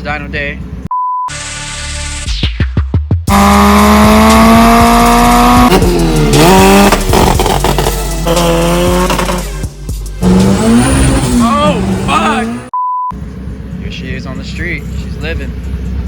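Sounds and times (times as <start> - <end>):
engine revving at high revs: 3.3 - 9.6, 10.2 - 12.7.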